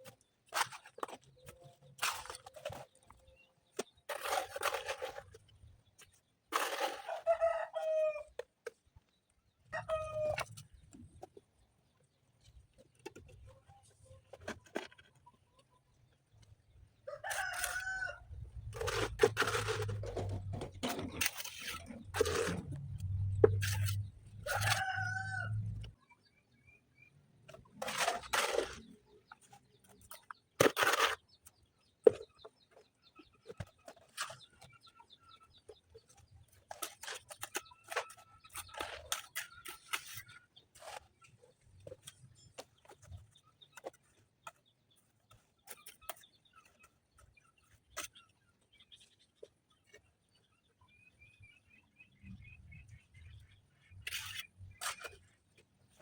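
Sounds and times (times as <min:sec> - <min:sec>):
rooster crowing: 0:24.5 - 0:25.6.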